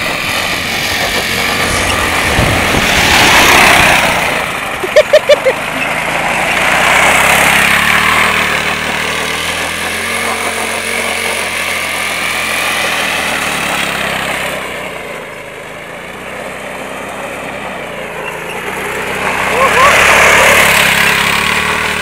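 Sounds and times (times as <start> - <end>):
small motor running: 0.0 - 14.5.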